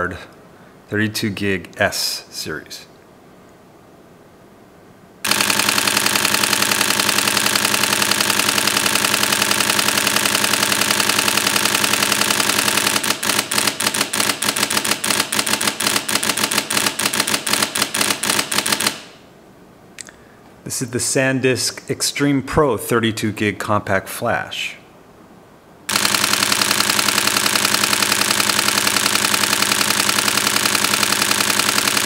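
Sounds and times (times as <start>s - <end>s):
camera shutter burst: 5.2s - 19.2s, 25.9s - 32.0s.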